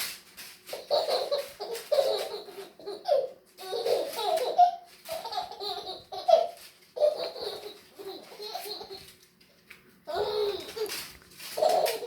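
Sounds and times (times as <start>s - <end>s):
baby laughing: 0.7s - 9.2s, 10.1s - 12.0s.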